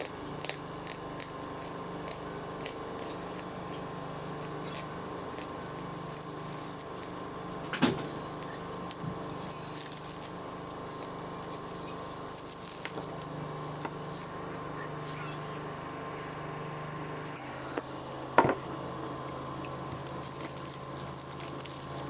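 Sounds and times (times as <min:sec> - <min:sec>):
biting into chalk: 0:00.0 - 0:07.2
crunching and chewing: 0:00.0 - 0:15.6, 0:17.4 - 0:22.0
steady background hum: 0:00.0 - 0:22.0.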